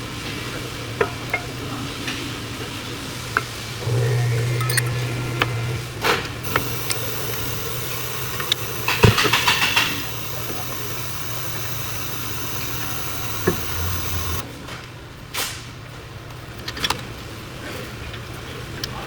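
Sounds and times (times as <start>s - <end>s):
car engine idling: 6.4s - 14.4s
hiss: 6.4s - 14.4s
quick clicks: 6.4s - 14.4s.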